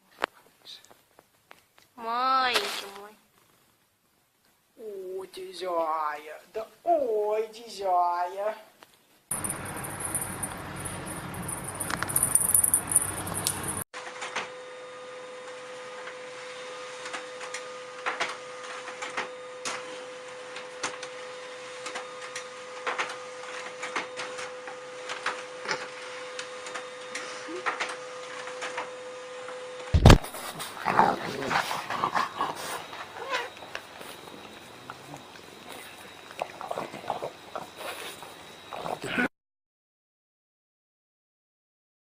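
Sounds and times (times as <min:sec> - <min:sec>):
clicks: 0:09.3 - 0:13.8
steady hum: 0:09.3 - 0:13.8
dog whimpering and yipping: 0:32.3 - 0:33.6.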